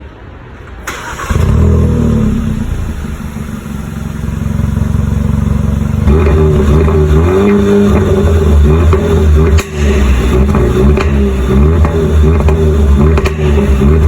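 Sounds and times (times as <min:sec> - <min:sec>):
car engine starting and idling: 0:00.6 - 0:14.0
car engine revving: 0:00.9 - 0:14.0.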